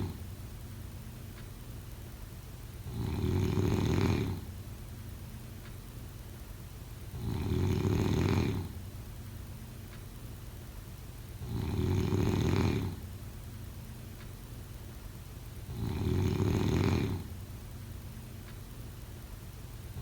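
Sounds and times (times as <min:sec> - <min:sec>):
person snoring: 0:02.9 - 0:04.5, 0:07.2 - 0:08.8, 0:11.4 - 0:13.0, 0:15.7 - 0:17.3.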